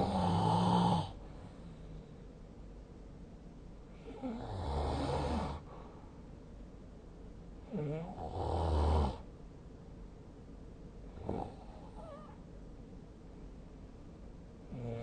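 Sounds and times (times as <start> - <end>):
person snoring: 0.0 - 1.2, 4.0 - 5.7, 7.7 - 9.2, 11.2 - 12.3, 14.7 - 15.0.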